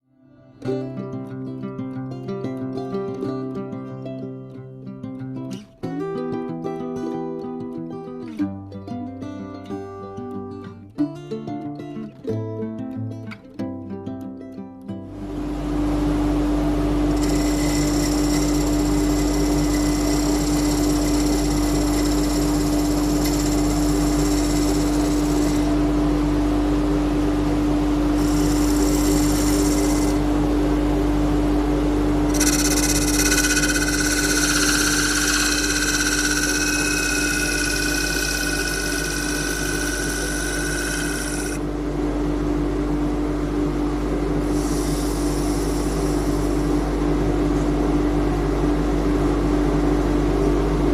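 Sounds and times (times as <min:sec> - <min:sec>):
wood lathe motor humming: 0:16.9 - 0:26.4, 0:28.0 - 0:30.5, 0:32.2 - 0:41.6, 0:44.4 - 0:47.0
turning tool scraping wood: 0:17.1 - 0:25.8, 0:28.2 - 0:30.2, 0:32.3 - 0:41.6, 0:44.5 - 0:46.7.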